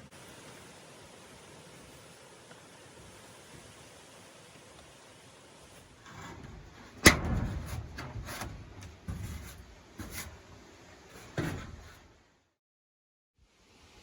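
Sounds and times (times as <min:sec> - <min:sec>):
knocks and rubs from handling: 0:06.1 - 0:10.5, 0:11.1 - 0:12.0.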